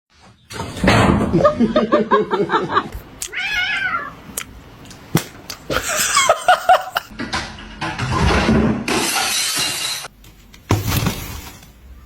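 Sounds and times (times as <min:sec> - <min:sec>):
cat meowing: 0:03.2 - 0:04.2.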